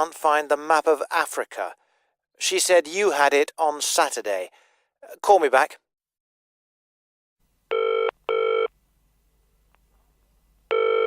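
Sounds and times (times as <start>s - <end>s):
telephone ringing: 7.7s - 8.7s, 10.7s - 11.0s.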